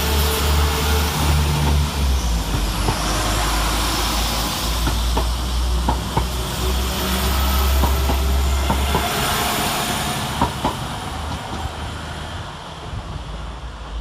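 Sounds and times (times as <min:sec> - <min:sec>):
diesel train engine hum: 0:00.0 - 0:14.0.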